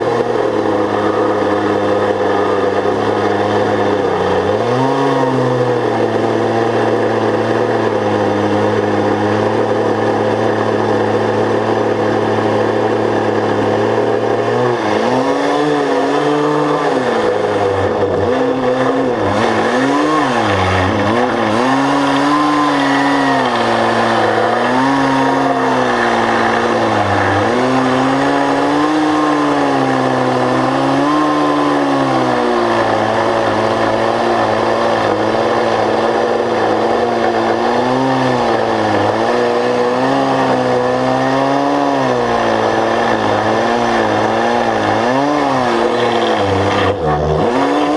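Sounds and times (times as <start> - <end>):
engine running under load: 0.0 - 47.9.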